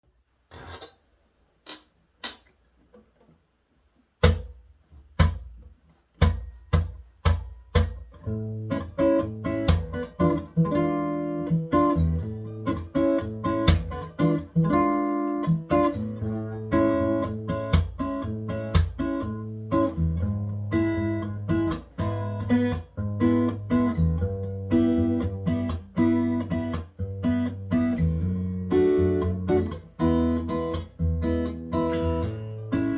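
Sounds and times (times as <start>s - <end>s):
faint taps: 1.6s - 3.4s
acoustic guitar bossa nova chords: 6.2s - 32.9s.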